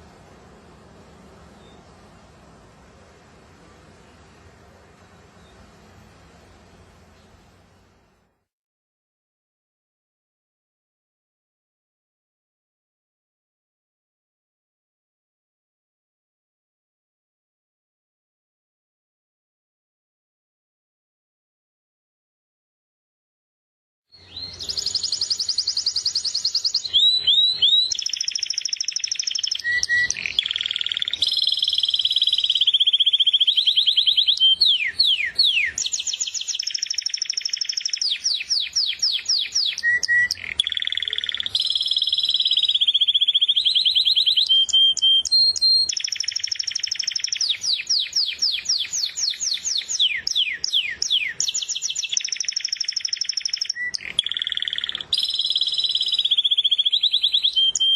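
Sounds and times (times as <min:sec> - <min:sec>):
finch song with rapid trills: 0:24.1 - 0:57.9.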